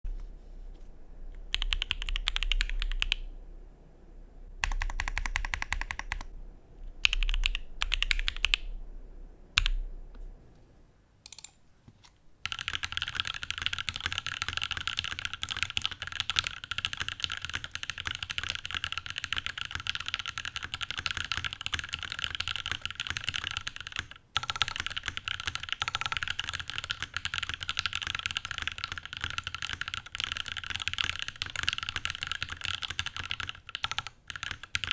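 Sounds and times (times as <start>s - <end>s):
typing on mechanical keyboard: 1.5s - 3.2s, 4.6s - 6.3s, 7.0s - 8.7s, 12.4s - 34.9s.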